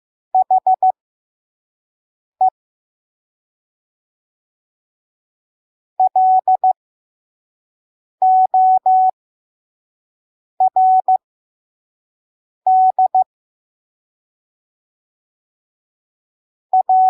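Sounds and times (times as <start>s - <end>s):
morse code beeps: 0.4s - 0.8s, 6.0s - 6.8s, 12.8s - 13.2s, 16.8s - 17.0s.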